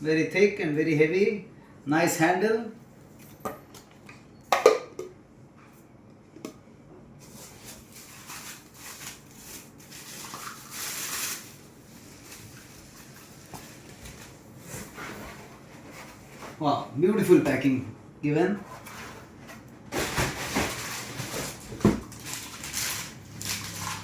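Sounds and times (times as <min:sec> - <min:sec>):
wrapping rustling: 0:07.2 - 0:16.6, 0:20.0 - 0:24.0.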